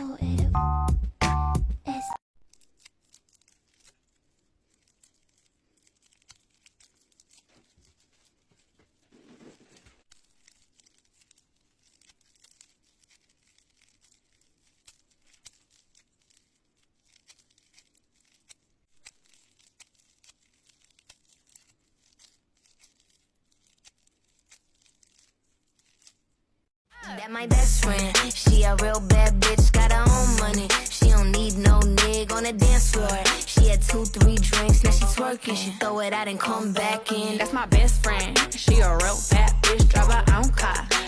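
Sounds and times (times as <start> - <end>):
slime crackling and popping: 2.4 - 9.1, 10.0 - 26.4
slime squish: 2.4 - 26.4.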